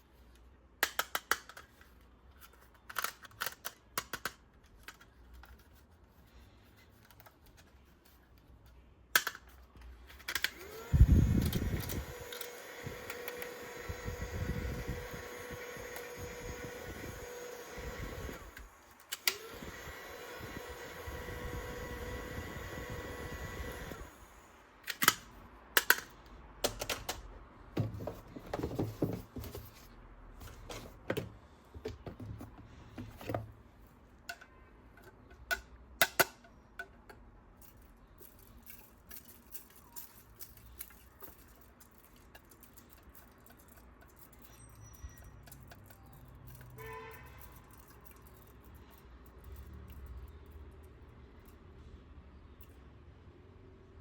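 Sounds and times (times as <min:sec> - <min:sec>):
plastic toys clicking and knocking: 0:00.8 - 0:05.8, 0:09.1 - 0:10.8, 0:24.8 - 0:29.7, 0:34.2 - 0:51.6.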